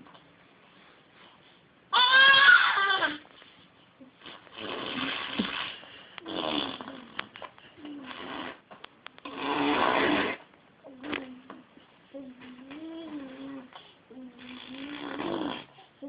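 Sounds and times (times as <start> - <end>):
baby making farting noises: 4.2 - 10.5, 14.4 - 15.7.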